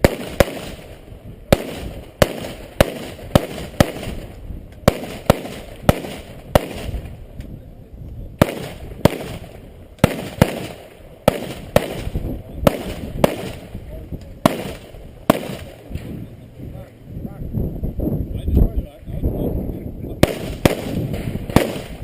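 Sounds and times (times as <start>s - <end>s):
rifle shots: 0.0s - 7.2s, 8.4s - 16.2s, 20.2s - 22.0s.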